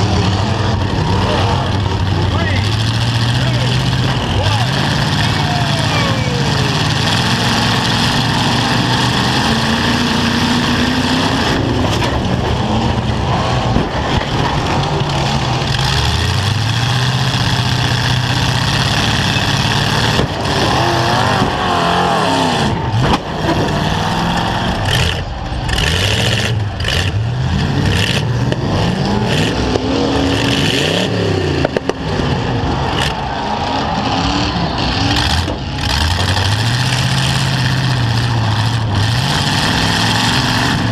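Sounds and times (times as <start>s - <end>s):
truck engines revving: 0.0s - 40.9s
loud din: 18.1s - 37.4s.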